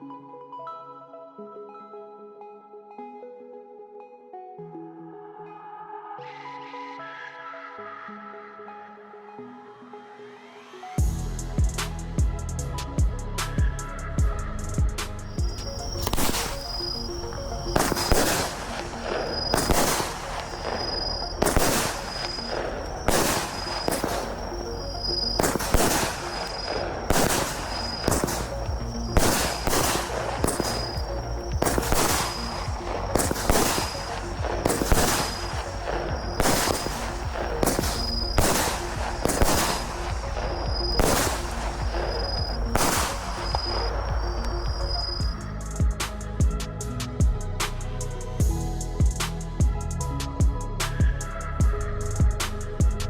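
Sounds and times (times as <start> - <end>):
firework battery shots: 15.2 - 45.5.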